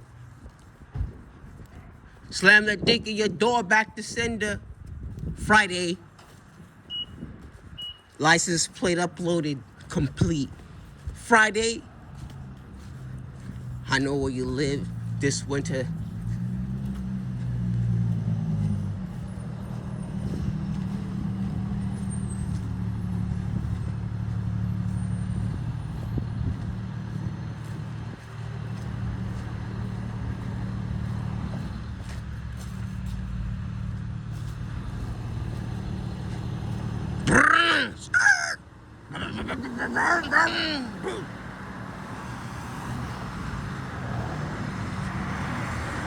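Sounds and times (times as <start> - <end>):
engine or traffic low hum: 0.0 - 46.0
loud harsh call: 37.3 - 41.3.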